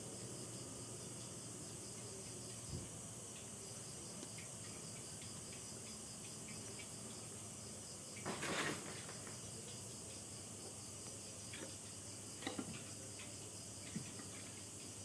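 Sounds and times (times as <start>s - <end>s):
insect chirring: 0.0s - 15.0s
rustling scrape: 8.3s - 9.1s.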